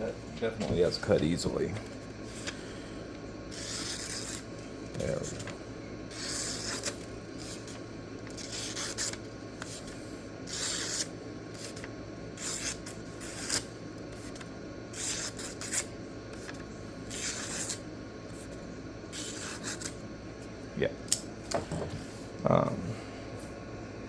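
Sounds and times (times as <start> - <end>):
knife slicing paper: 3.5 - 4.5, 6.1 - 14.4, 15.0 - 17.8.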